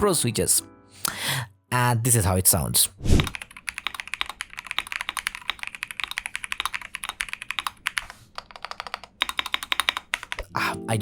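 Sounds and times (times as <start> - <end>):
mechanical keyboard typing: 3.3 - 10.5.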